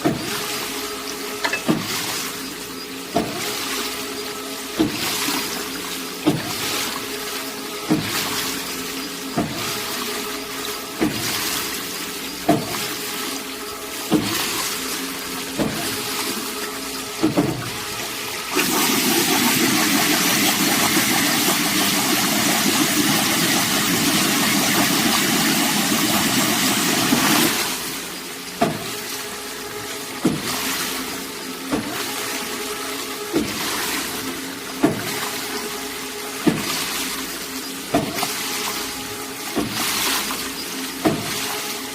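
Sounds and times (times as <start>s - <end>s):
machine running with sharp knocks: 0.0s - 41.9s.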